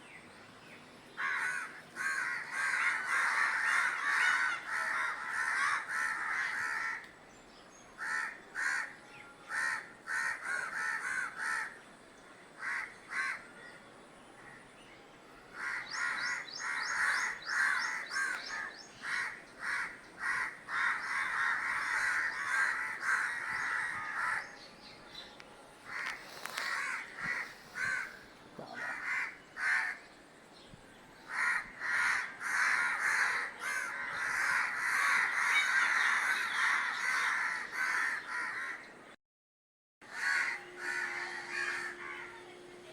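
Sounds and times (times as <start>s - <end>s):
crow cawing: 1.2s - 7.1s, 8.0s - 8.9s, 9.5s - 11.8s, 12.6s - 13.4s, 15.6s - 24.5s, 25.9s - 30.0s, 31.3s - 38.8s, 40.0s - 42.4s.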